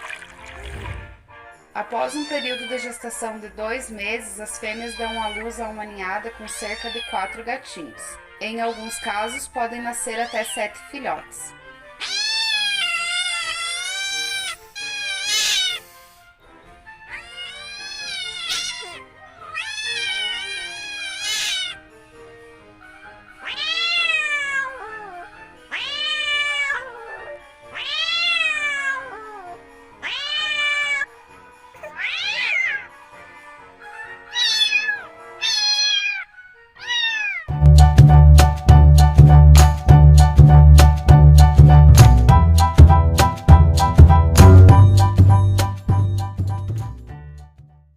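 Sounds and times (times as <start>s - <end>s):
faint background music: 0.0s - 37.7s
cat meowing: 2.0s - 3.2s, 4.5s - 10.8s, 12.0s - 16.1s, 17.0s - 21.9s, 23.3s - 31.1s, 31.8s - 33.0s, 33.9s - 37.6s.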